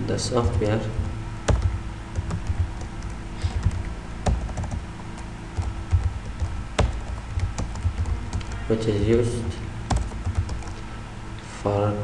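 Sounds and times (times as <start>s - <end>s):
computer keyboard typing: 0.5s - 8.6s, 9.9s - 10.8s.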